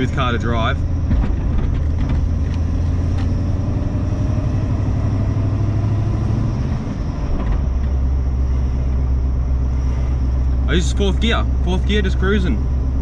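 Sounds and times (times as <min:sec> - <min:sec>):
car engine drone in cabin: 0:00.0 - 0:13.0.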